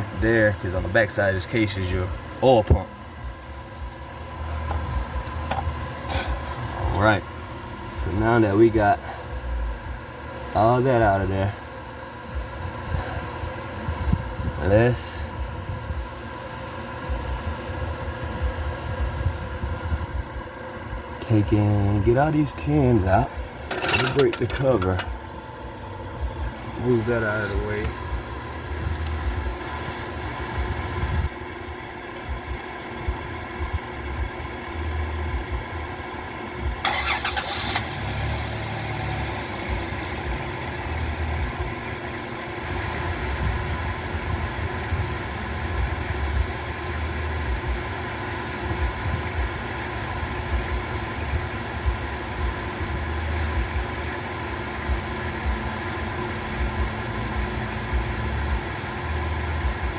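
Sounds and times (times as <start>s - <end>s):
metallic rattle: 23.3s - 25.2s.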